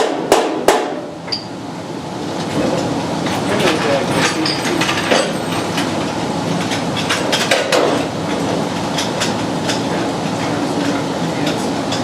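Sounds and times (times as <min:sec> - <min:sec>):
steady background noise: 0:00.0 - 0:12.0
metal knocks and clanks: 0:02.6 - 0:10.0.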